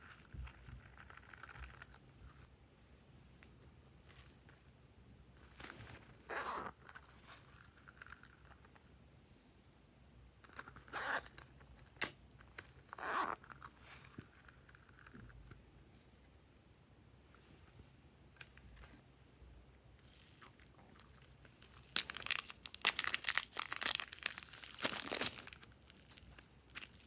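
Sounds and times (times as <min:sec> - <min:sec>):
slime squishing: 0:21.8 - 0:27.0.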